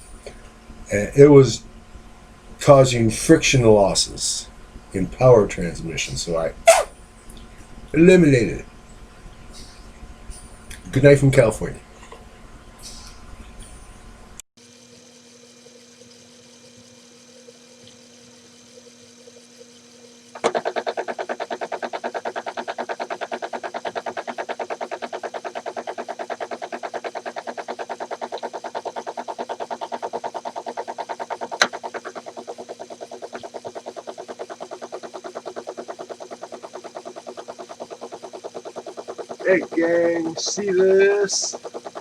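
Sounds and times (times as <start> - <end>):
lathe drive clicking: 20.4 - 42.0.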